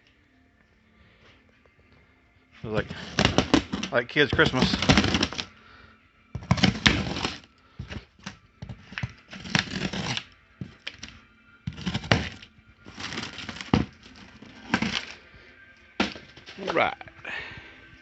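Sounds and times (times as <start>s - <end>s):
packaging tearing and rustling: 2.7s - 5.5s, 6.4s - 11.1s, 11.7s - 15.2s.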